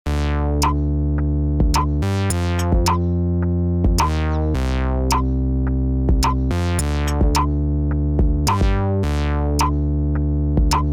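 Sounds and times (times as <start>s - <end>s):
synthesizer music: 0.1s - 1.0s, 1.7s - 3.3s, 6.2s - 10.9s.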